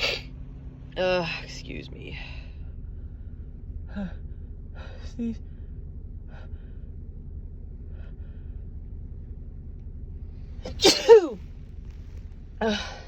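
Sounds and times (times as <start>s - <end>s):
woman sneezing: 10.7s - 11.4s.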